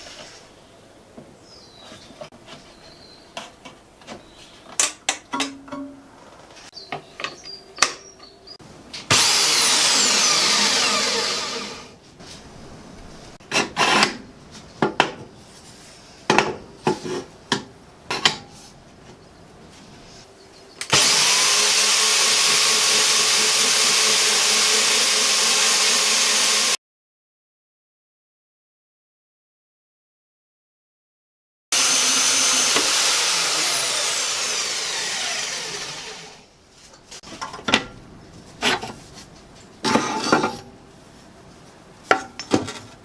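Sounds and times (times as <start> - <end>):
power saw running: 9.1 - 12.0, 20.9 - 26.8, 31.8 - 36.5.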